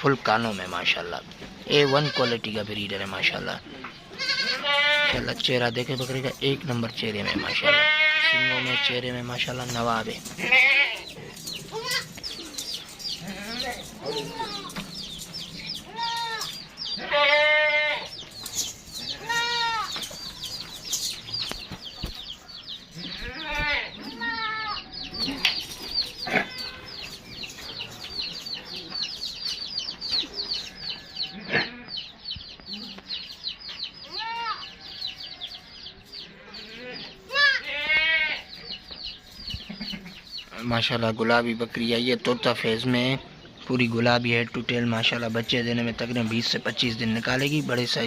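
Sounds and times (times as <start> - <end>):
goats bleating: 1.7 - 2.6, 4.1 - 5.4, 7.1 - 15.1, 15.7 - 18.2, 19.1 - 20.0, 23.0 - 27.1, 34.0 - 35.4, 36.4 - 40.7.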